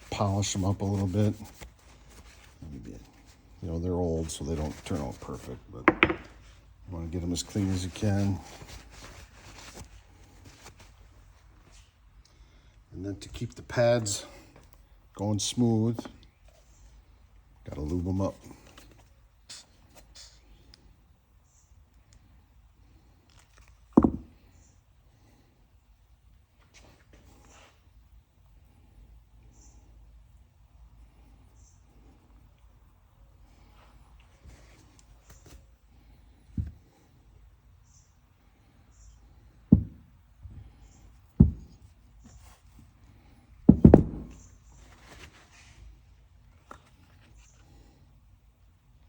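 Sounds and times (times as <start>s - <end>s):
metal parts knocking on workbench: 5.8s - 6.4s
short rustle: 7.4s - 12.0s
dull thump: 24.0s - 24.3s, 39.7s - 40.1s, 41.4s - 41.8s, 43.7s - 44.4s.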